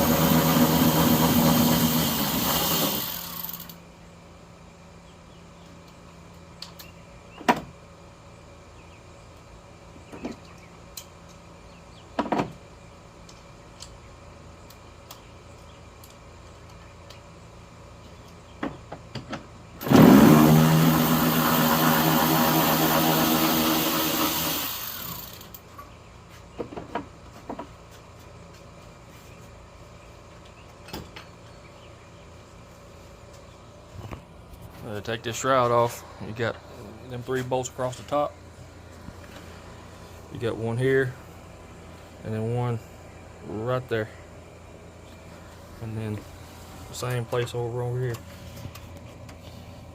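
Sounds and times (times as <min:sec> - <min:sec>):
loud motor whir: 0:00.0 - 0:03.8, 0:19.8 - 0:25.6.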